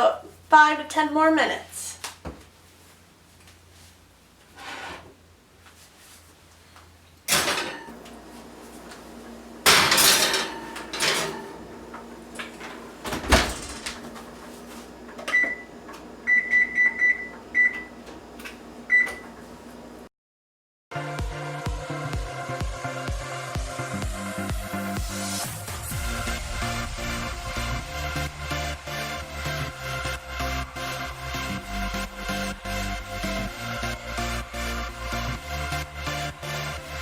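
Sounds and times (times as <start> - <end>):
oven door clunking: 7.3 - 7.9, 9.7 - 14.2.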